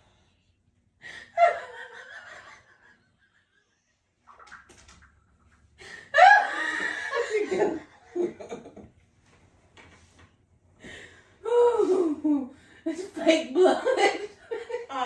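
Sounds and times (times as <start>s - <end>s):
woman laughing: 6.1s - 8.8s, 11.5s - 15.0s.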